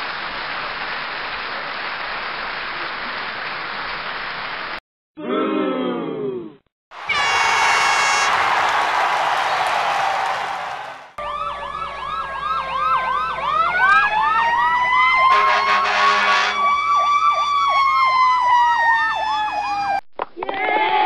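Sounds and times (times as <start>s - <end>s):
falling siren tone: 7.0s - 8.4s, 11.2s - 20.0s
siren yelp: 7.0s - 8.4s, 11.2s - 20.0s
horn blast: 7.0s - 8.6s, 15.2s - 16.7s
siren wail: 7.0s - 8.7s, 11.2s - 20.0s.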